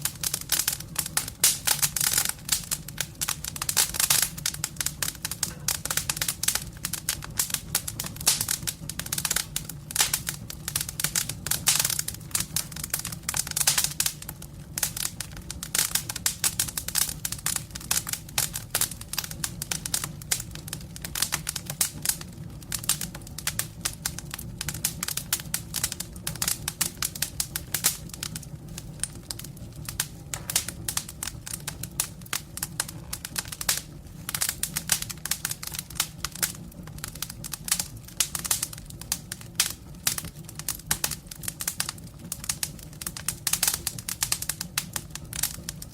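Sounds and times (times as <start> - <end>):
campfire crackling and popping: 0.0 - 45.9.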